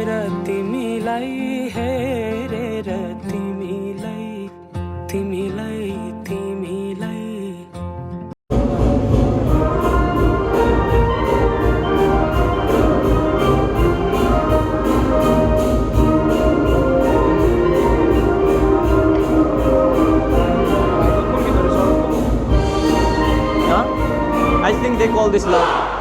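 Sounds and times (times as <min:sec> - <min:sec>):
orchestral band music: 0:08.5 - 0:26.0.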